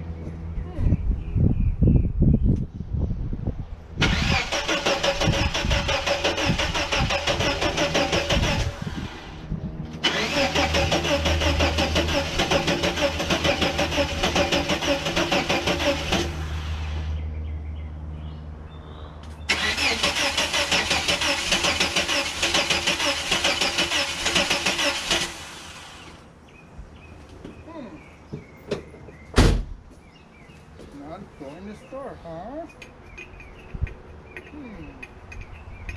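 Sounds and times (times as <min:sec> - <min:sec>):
starter motor cranking engine: 0:04.0 - 0:09.4, 0:10.0 - 0:17.0, 0:19.5 - 0:26.2.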